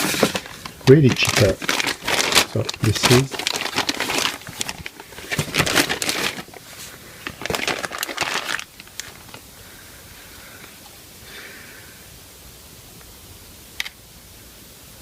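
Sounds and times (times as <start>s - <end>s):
plastic packaging crinkling: 0.0s - 9.5s.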